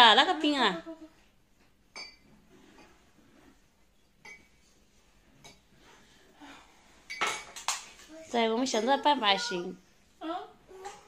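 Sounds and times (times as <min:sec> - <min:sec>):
tableware clinking: 0:01.9 - 0:03.0, 0:04.0 - 0:04.7, 0:05.4 - 0:05.7, 0:07.0 - 0:08.0.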